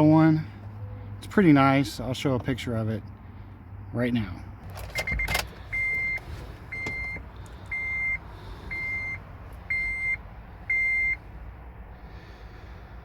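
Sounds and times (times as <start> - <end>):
car warning chime beeping: 4.9 - 11.2.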